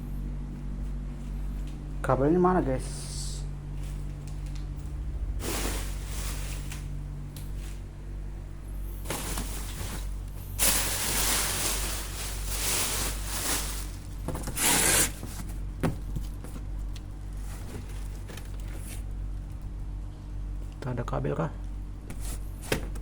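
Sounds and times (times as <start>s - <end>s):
steady low hum: 0.0s - 23.0s
rustling of things being handled: 3.7s - 7.9s, 8.8s - 19.6s.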